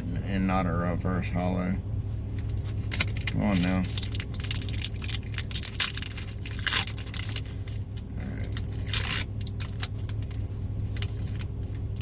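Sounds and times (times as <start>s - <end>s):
steady low hum: 0.0s - 12.0s
foil pack crinkling: 2.5s - 12.0s.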